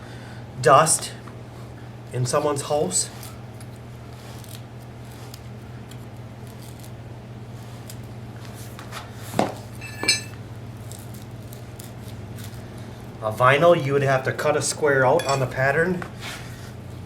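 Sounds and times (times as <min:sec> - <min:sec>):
low steady hum: 0:09.7 - 0:11.1, 0:14.5 - 0:17.0
metal tool clinking: 0:09.8 - 0:10.4, 0:15.2 - 0:15.7.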